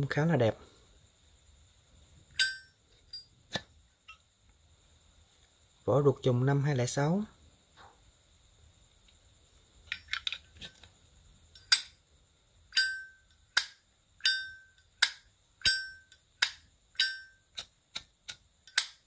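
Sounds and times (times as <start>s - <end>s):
metallic ring: 2.3s - 3.4s, 12.7s - 13.4s, 14.2s - 16.3s, 16.9s - 17.6s.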